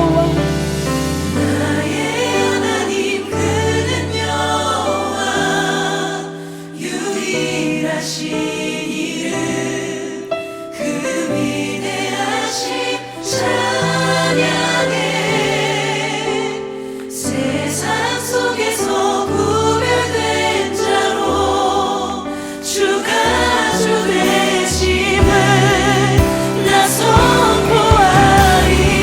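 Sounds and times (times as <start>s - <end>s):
choir singing praise song: 0.0s - 29.0s
held instrumental accompaniment: 23.2s - 29.0s.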